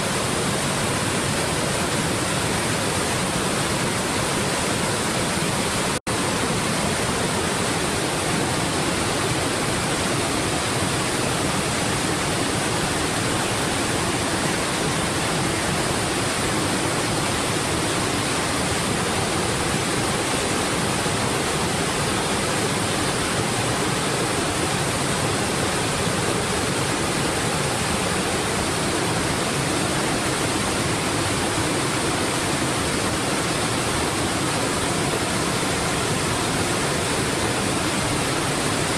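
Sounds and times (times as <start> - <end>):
waterfall roaring: 0.0 - 38.9.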